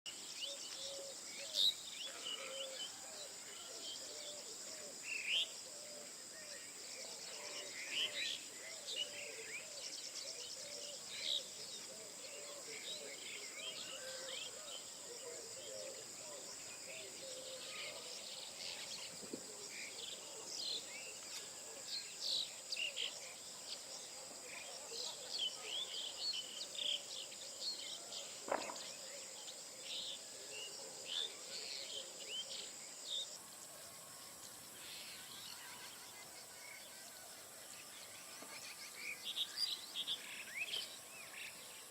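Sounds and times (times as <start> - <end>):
birds chirping and singing: 0.3 - 33.4.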